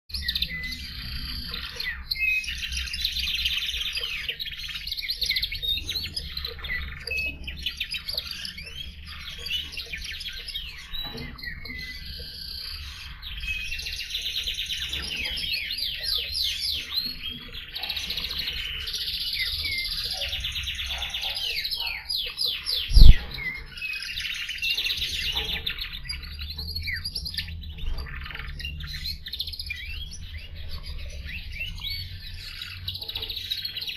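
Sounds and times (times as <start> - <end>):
canary trilling and chirping: 0.1 - 33.9
loud low thump: 22.9 - 23.5.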